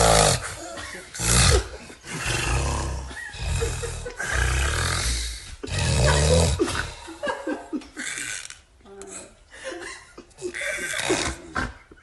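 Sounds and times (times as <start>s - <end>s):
person snoring: 0.0s - 7.2s.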